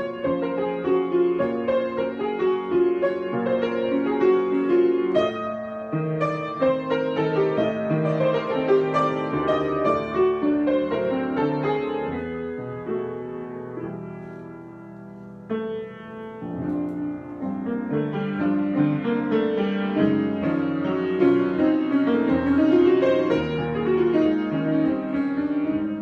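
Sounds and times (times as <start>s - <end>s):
piano improvisation: 0.0s - 26.0s.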